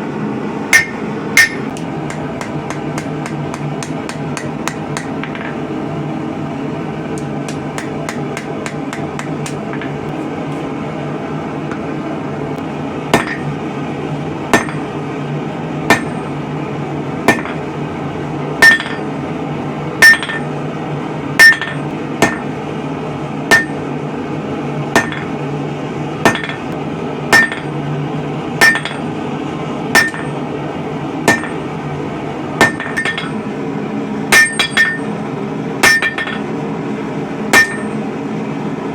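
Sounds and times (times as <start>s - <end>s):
low hum: 0.0s - 38.9s
hammer striking steel on anvil: 0.7s - 5.6s, 7.2s - 10.1s, 13.1s - 13.6s, 14.5s - 14.9s, 15.9s - 16.4s, 17.3s - 17.7s, 18.6s - 19.2s, 20.0s - 20.6s, 21.4s - 22.6s, 23.5s - 23.9s, 25.0s - 25.4s, 26.2s - 27.8s, 28.6s - 29.1s, 29.9s - 30.4s, 31.3s - 31.6s, 32.6s - 33.5s, 34.3s - 35.2s, 35.8s - 36.5s, 37.5s - 38.0s.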